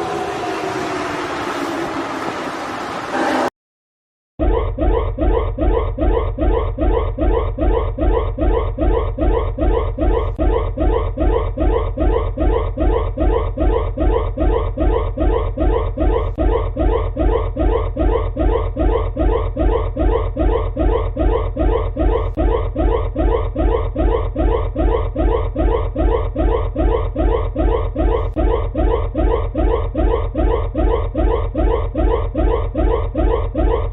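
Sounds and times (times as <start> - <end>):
electronic whooping alarm tone: 0.0 - 2.2, 4.4 - 33.9
low hum: 0.0 - 3.5.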